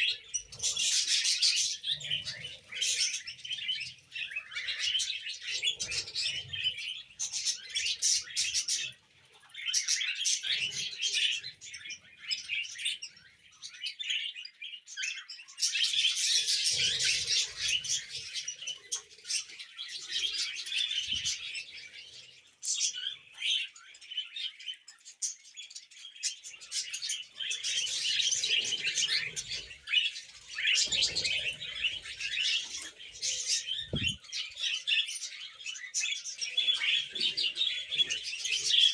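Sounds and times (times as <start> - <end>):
budgerigars chirping and warbling: 0.0 - 38.9
soft low thumps or flutters: 33.9 - 34.2.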